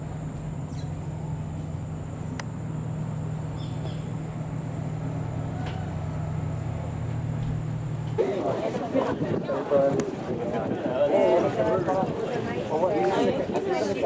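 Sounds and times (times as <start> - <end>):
thin high tone: 0.0 - 8.2
low engine drone: 0.0 - 8.8.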